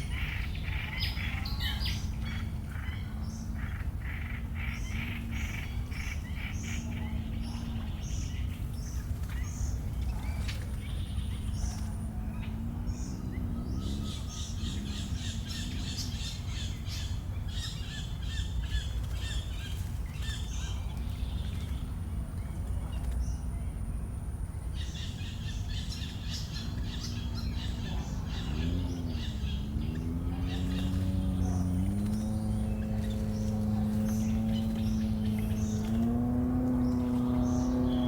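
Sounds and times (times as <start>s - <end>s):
birds chirping: 0.0s - 38.0s
steady low rumble: 18.3s - 38.0s.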